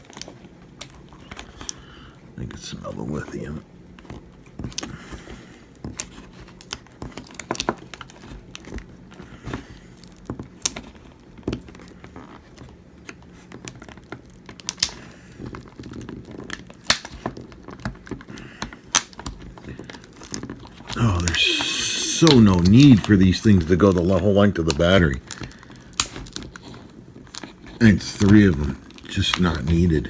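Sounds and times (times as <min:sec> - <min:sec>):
adhesive strips peeling: 0:20.9 - 0:30.0.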